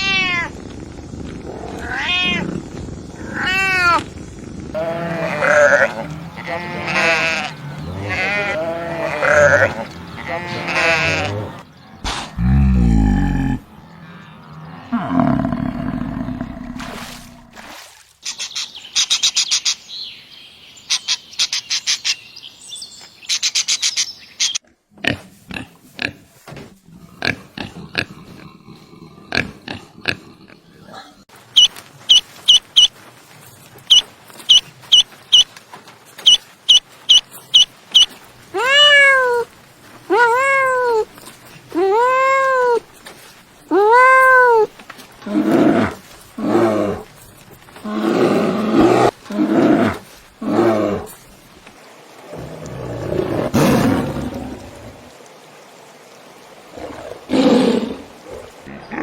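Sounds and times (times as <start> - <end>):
rough roar-like calls: 4.7 - 17.6
drawn-out rising and falling calls: 31.4 - 33.0, 33.8 - 35.6, 36.2 - 41.2
short high animal chirps: 36.2 - 38.1.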